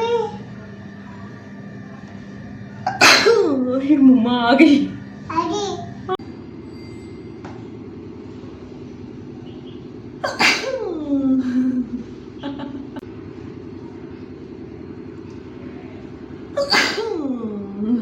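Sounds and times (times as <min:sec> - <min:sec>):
girl sneezing: 0:10.2 - 0:10.8, 0:16.6 - 0:17.2.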